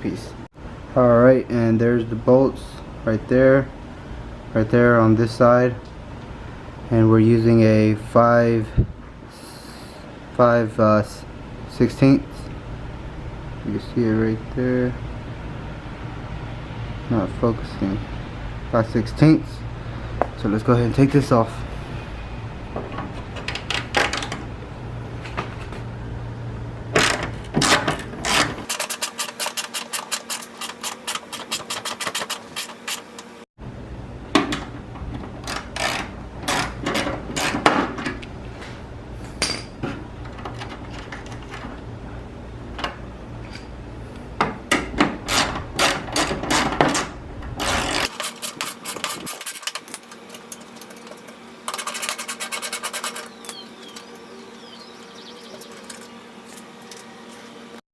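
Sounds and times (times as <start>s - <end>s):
steady low hum: 0.0s - 57.8s
ratchet clicking: 35.4s - 37.6s.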